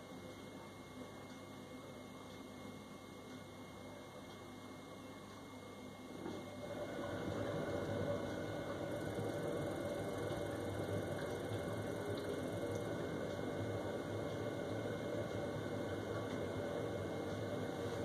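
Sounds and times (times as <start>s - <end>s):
boiler humming low: 0.0s - 18.0s
gas burner rough rumble: 6.2s - 18.0s.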